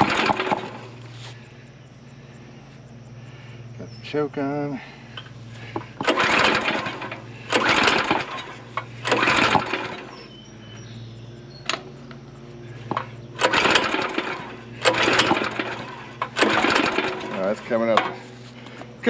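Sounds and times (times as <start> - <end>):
recoil cord pull-start: 0.0 - 1.0, 5.8 - 10.2, 12.9 - 18.2
engine spinning over without firing: 0.0 - 1.4, 5.1 - 19.0.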